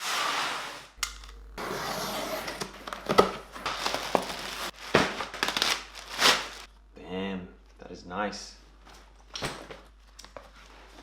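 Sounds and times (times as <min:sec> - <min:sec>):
packaging rustling and crinkling: 0:02.6 - 0:06.7.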